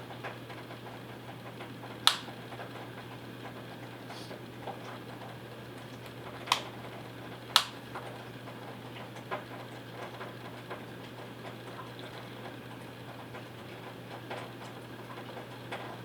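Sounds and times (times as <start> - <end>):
parrot clicking: 2.0 - 2.3, 6.5 - 6.7, 7.5 - 7.8.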